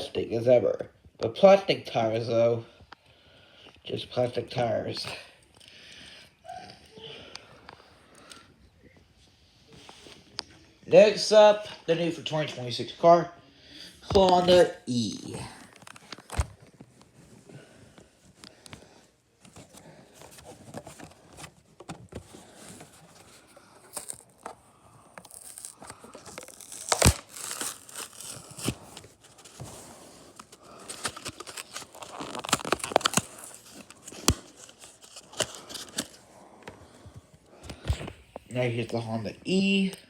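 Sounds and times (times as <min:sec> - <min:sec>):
packaging tearing and crinkling: 0:20.3 - 0:36.2.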